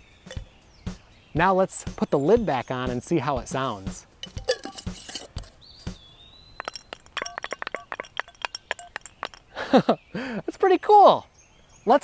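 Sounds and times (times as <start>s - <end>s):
stick rattling inside shaken jar: 4.2s - 5.9s, 6.6s - 9.5s.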